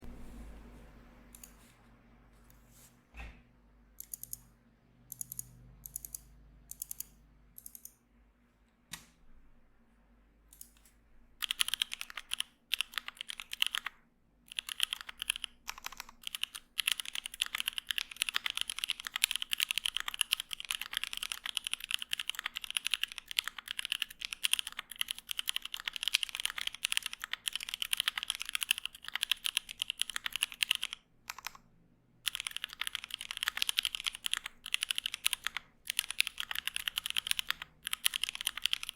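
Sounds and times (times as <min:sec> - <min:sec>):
mechanical keyboard typing: 0:04.0 - 0:04.4, 0:05.1 - 0:08.0, 0:11.4 - 0:38.9.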